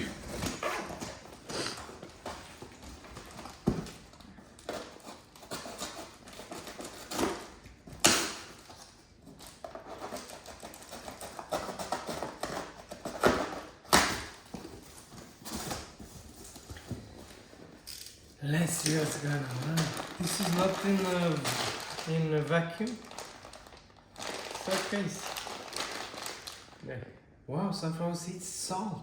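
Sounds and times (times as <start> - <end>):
plastic bags rustling: 18.4 - 26.8.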